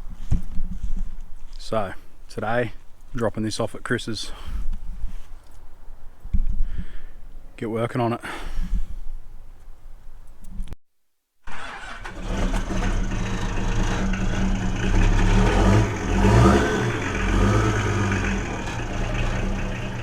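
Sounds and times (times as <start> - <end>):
diesel truck engine starting and running: 11.5 - 20.0.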